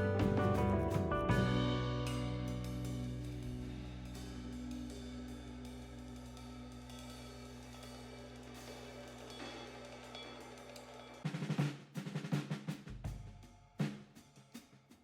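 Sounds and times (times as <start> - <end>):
loud drum beat: 0.0 - 15.0
ticking cymbals: 2.8 - 11.3.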